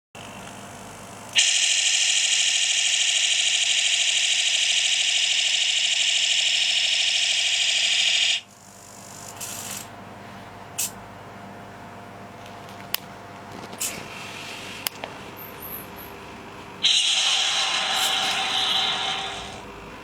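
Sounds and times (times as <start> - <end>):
high-pitched electronic tone: 16.8 - 19.6.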